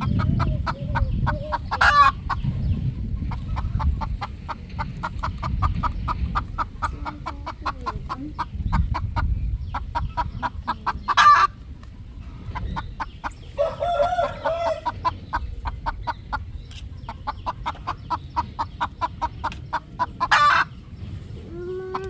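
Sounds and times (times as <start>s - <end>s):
roosters clucking: 0.0s - 22.0s.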